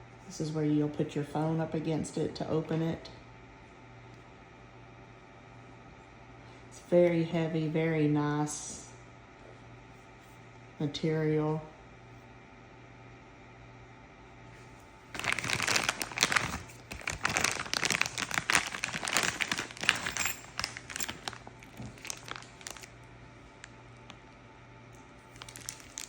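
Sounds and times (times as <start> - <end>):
packaging crinkling and rustling: 15.1 - 24.3, 25.2 - 26.0.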